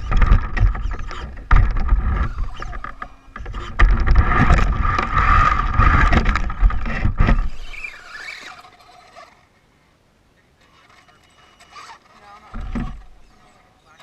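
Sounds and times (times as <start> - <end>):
toy car motor whine: 0.0 - 9.5, 10.6 - 14.0
wheels rumbling on dirt: 0.0 - 9.6, 10.6 - 14.0.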